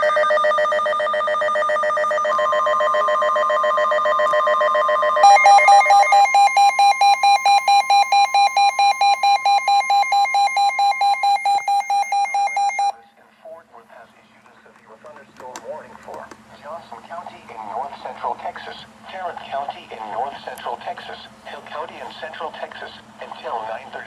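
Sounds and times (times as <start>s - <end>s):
pulsing beep: 0.0s - 12.9s
warbling electronic alarm: 0.0s - 13.0s.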